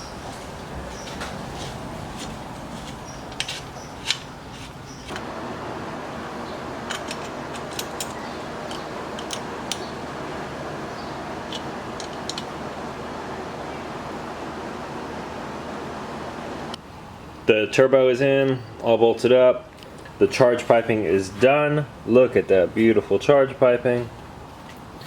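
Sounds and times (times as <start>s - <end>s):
steady background hiss: 0.0s - 25.0s
metallic tool clicks and clinks: 11.5s - 12.5s.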